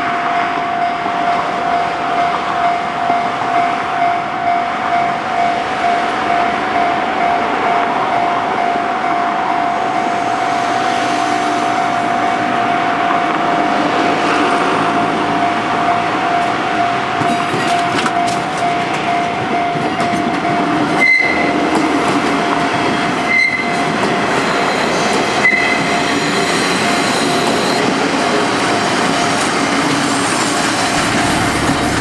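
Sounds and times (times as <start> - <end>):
level crossing warning bell: 0.0 - 13.8, 14.4 - 29.8
diesel railcar engine and rail noise: 0.0 - 32.0.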